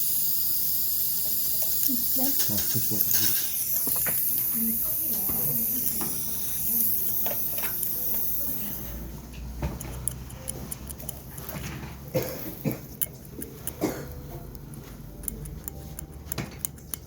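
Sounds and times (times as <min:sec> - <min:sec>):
high hiss: 0:00.0 - 0:09.1
metal dental instruments clinking: 0:01.3 - 0:09.0, 0:09.6 - 0:17.0.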